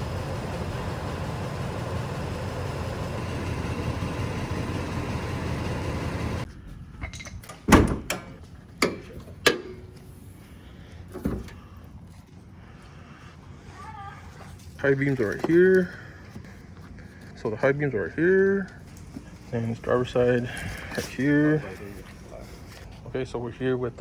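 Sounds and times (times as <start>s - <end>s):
low rumbling noise: 0.0s - 7.0s.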